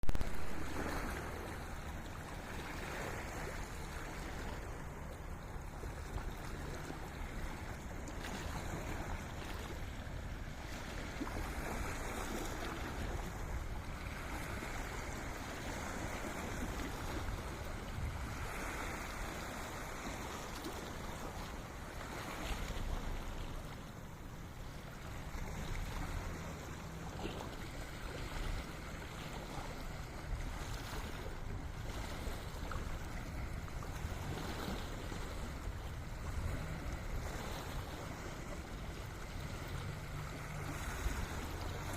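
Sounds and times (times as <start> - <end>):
sea waves washing ashore: 0.0 - 41.9
wind buffeting microphone: 0.1 - 21.2.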